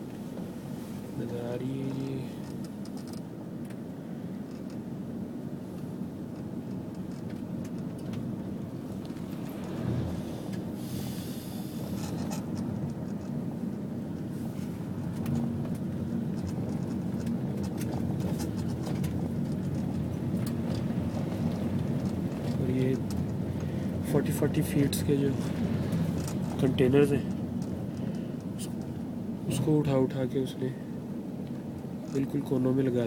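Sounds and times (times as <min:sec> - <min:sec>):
car driving rumble inside cabin: 0:00.0 - 0:33.0
small clicks and rattles: 0:01.9 - 0:03.8, 0:04.5 - 0:04.8, 0:05.8 - 0:09.8, 0:11.9 - 0:13.4, 0:15.1 - 0:28.9, 0:31.4 - 0:32.4.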